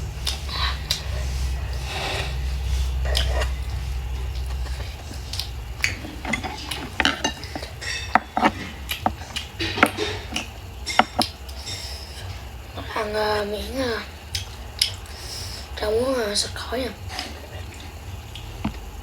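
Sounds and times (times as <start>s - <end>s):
low rumble: 0.0s - 19.0s
utensils clinking on a dish: 4.3s - 12.0s.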